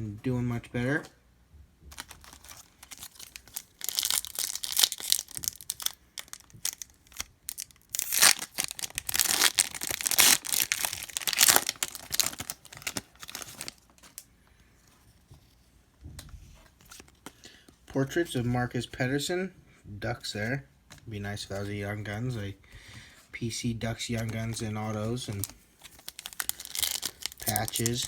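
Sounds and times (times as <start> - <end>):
foil wrapper tearing and crinkling: 1.9 - 14.2, 25.2 - 28.0.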